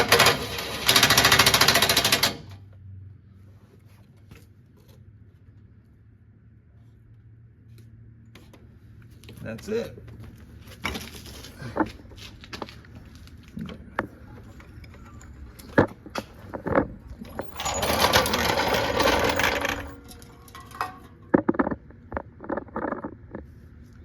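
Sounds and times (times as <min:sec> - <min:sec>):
metal clicks and knocks: 0:15.6 - 0:23.4
loud mechanical whirr: 0:16.5 - 0:20.3.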